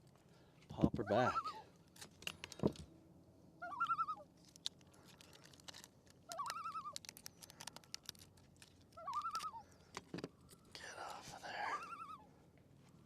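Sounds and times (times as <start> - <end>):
loon tremolo call: 3.6 - 4.2.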